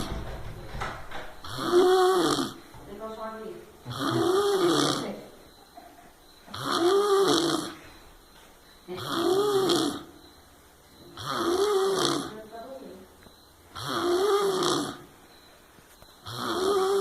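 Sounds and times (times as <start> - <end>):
person snoring: 1.4 - 2.6, 3.9 - 5.2, 6.5 - 7.8, 8.9 - 10.1, 11.2 - 12.4, 13.8 - 15.1, 16.2 - 17.0.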